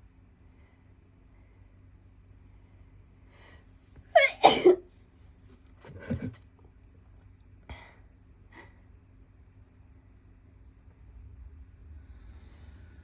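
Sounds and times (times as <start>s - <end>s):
person sneezing: 4.2s - 4.8s.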